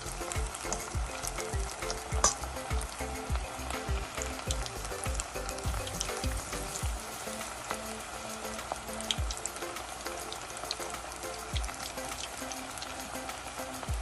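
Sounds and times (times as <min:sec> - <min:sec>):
food deep-frying in oil: 0:00.0 - 0:14.0
regular low thumping: 0:00.3 - 0:07.0, 0:11.6 - 0:11.8.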